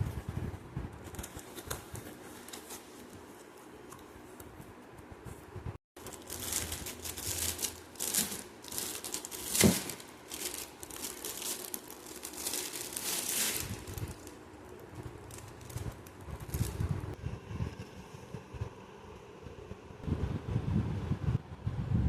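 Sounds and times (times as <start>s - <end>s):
packaging crinkling and rustling: 1.0s - 4.1s, 6.0s - 17.2s
packaging tearing: 6.0s - 16.9s.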